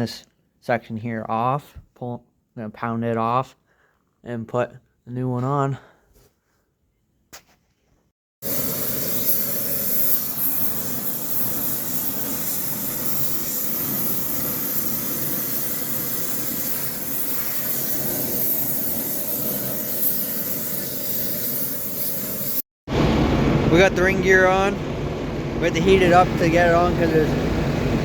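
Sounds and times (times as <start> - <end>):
gas torch hissing: 8.4 - 22.6, 25.7 - 27.5.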